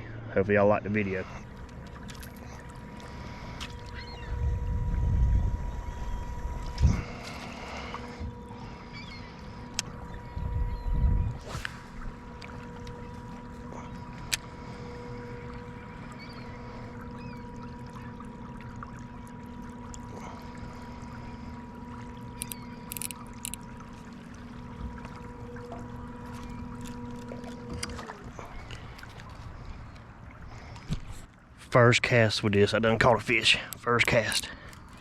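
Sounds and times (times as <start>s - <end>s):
light water noise: 0.0s - 35.0s
steady pitched hum: 0.0s - 35.0s
sharp clicks: 22.4s - 23.7s.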